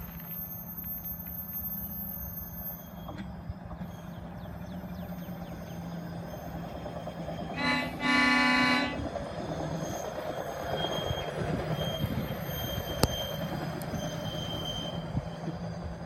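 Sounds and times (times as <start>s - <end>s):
truck rolling along rails: 0.0s - 16.0s
truck horn blasts: 7.5s - 9.1s.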